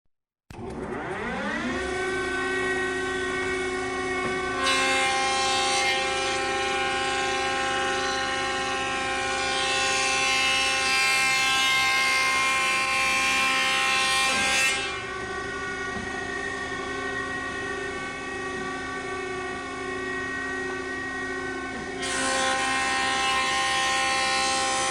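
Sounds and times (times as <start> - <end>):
power planer motor whining: 0.6 - 24.9.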